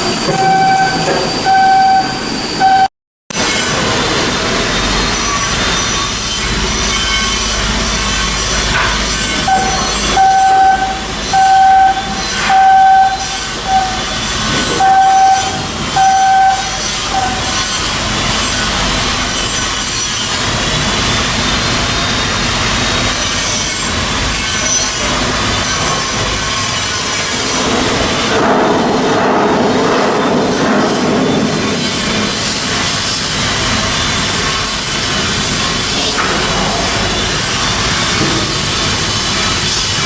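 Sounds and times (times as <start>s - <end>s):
warning beeper short beeps: 0.3s - 2.9s, 9.4s - 14.2s, 14.8s - 17.6s.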